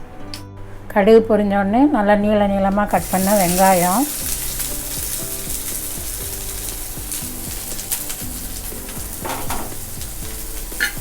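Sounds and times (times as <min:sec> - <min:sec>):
onions sizzling in oil: 0:02.9 - 0:11.0.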